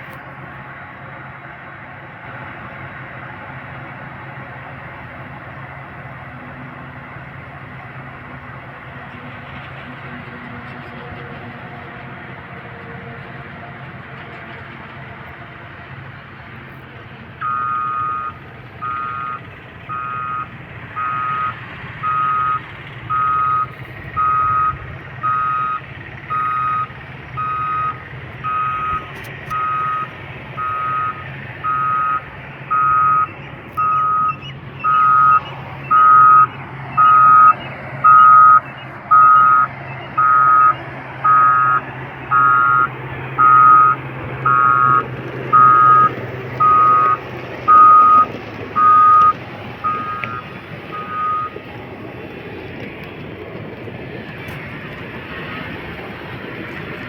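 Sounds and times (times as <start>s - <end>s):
diesel engine running: 0.0s - 57.0s
reversing alarm beeping: 17.4s - 51.7s.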